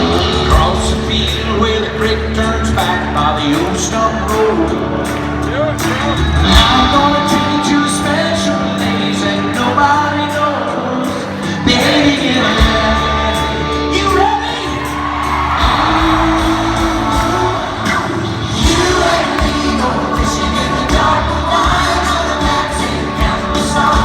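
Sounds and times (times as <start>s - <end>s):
person singing: 0.0s - 15.0s, 15.6s - 24.0s
live country band: 0.0s - 24.0s
drum hits: 15.6s - 24.0s.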